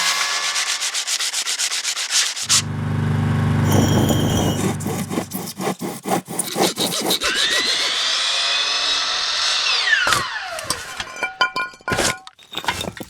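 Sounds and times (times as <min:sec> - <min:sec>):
fast rubbing strokes: 0:00.0 - 0:02.7, 0:03.7 - 0:08.0
irregular rasping strokes: 0:00.0 - 0:02.7, 0:03.7 - 0:08.1
power tool whine: 0:02.4 - 0:05.7, 0:07.1 - 0:11.0
low hum with scraping: 0:02.5 - 0:05.7.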